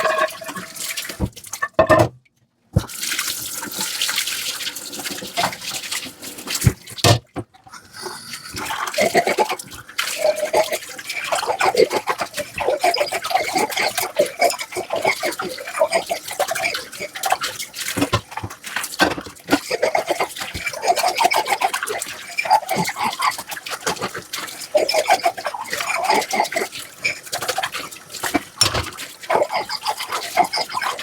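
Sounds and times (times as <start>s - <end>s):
dishes clinking: 0.0s - 0.7s, 1.6s - 2.2s, 28.6s - 29.7s
water splashing: 0.0s - 1.8s, 7.8s - 31.0s
sponge scrubbing dishes: 0.0s - 2.0s, 8.4s - 31.0s.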